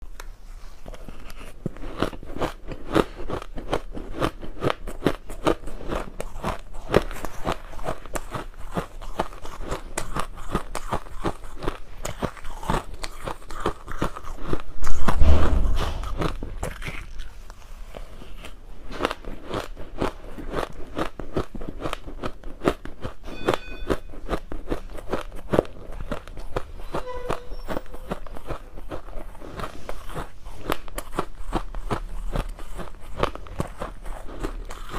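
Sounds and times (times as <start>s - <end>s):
crunching and chewing ice: 0.7s - 15.2s, 16.0s - 34.9s
loud deep thump: 14.8s - 16.9s.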